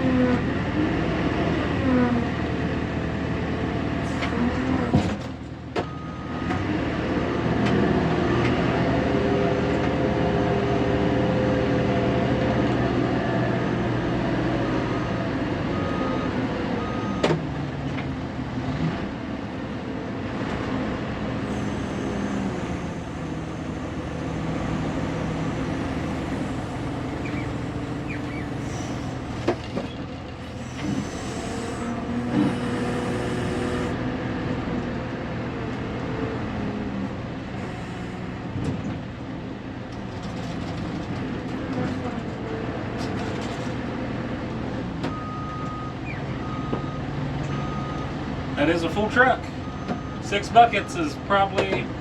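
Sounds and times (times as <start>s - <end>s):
diesel engine under load: 0.0s - 52.0s.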